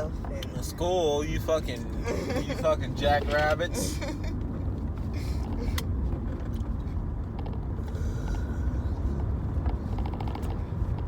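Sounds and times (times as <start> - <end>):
car rumble from inside cabin: 0.0 - 11.0.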